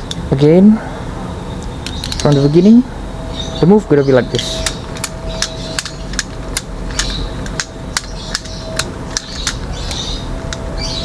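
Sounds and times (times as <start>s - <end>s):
knife handles clicking together: 4.4s - 10.6s.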